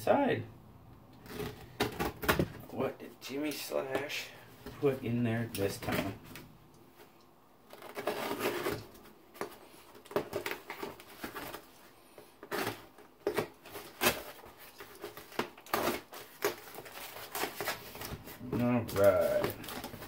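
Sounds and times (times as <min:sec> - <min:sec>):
cardboard box rustling and tearing: 0:07.7 - 0:11.8, 0:12.4 - 0:20.0
sharp crackles of tape: 0:12.5 - 0:20.0.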